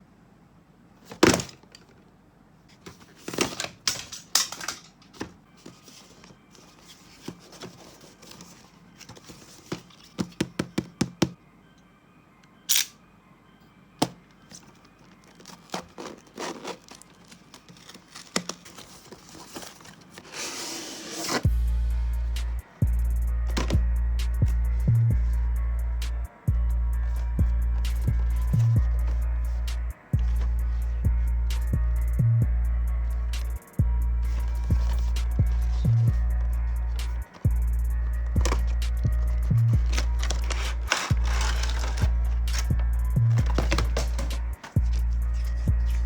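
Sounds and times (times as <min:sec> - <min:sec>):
packaging rustling and tearing: 0:14.5 - 0:21.5, 0:34.2 - 0:46.0.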